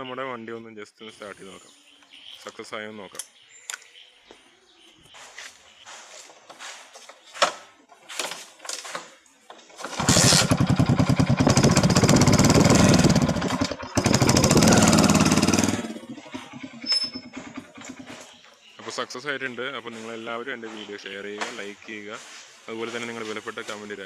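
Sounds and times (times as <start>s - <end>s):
motorcycle engine starting and running: 9.8s - 18.3s.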